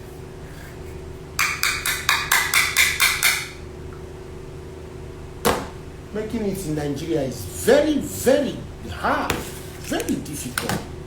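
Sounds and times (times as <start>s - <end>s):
steady low hum: 0.0s - 11.0s
sharp knocks: 5.4s - 5.8s.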